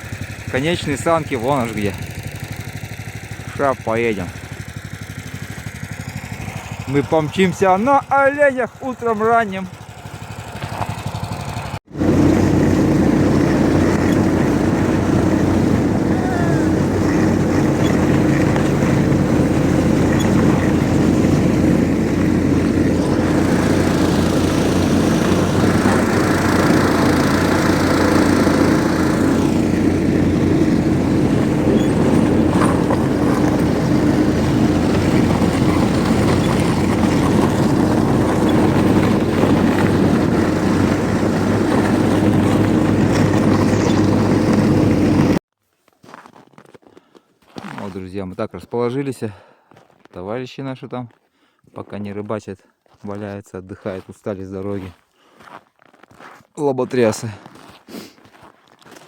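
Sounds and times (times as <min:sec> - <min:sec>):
snowmobile engine running: 0:00.0 - 0:45.4.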